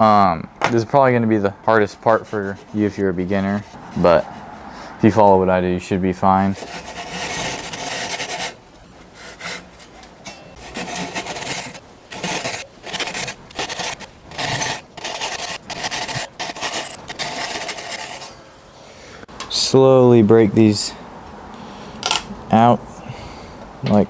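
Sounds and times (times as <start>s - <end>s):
hand tool scraping wood: 2.0s - 5.3s, 6.2s - 18.5s.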